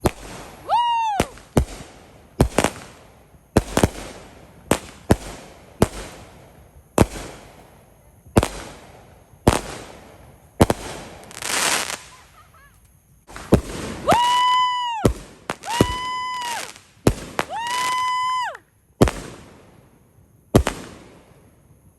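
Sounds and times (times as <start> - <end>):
firework whistle: 0.0 - 1.9, 10.7 - 19.3
fireworks bangs: 0.0 - 21.5
hissing crackle: 8.4 - 18.5.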